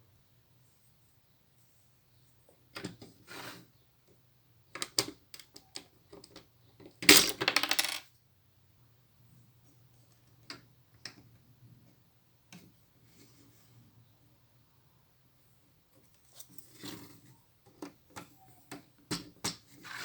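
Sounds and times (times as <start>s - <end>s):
plastic pieces clattering together: 7.0s - 8.0s
plastic pieces clicking and rattling: 7.0s - 8.1s.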